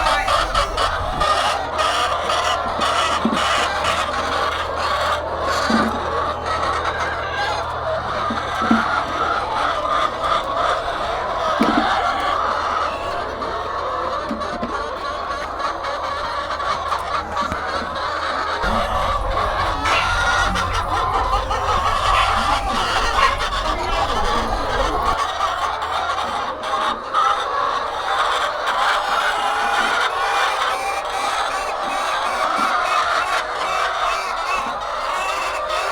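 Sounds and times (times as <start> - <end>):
low hum: 0.0 - 1.4, 18.6 - 25.2
hens clucking: 0.0 - 35.9.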